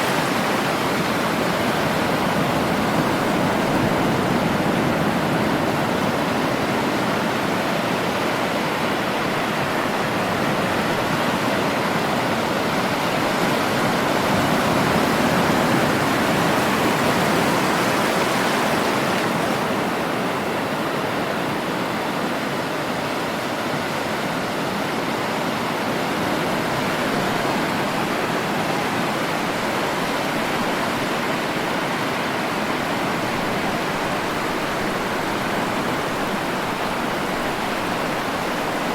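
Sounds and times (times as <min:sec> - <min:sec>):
waves breaking: 0:00.0 - 0:38.9.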